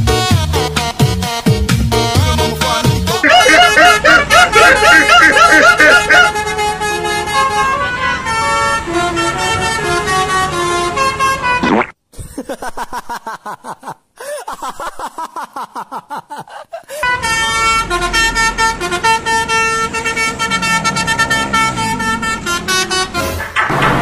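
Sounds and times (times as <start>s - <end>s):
multi-tone bus horn warbling: 2.2s - 11.7s, 16.9s - 23.4s.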